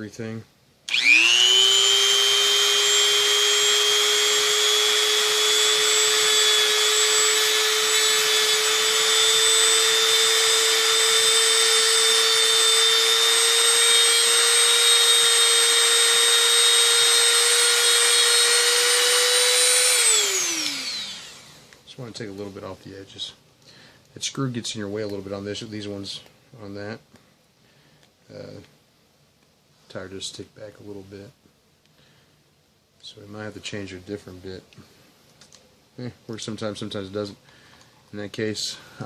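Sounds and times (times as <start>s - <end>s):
rotary tool high whine: 0.9s - 21.7s.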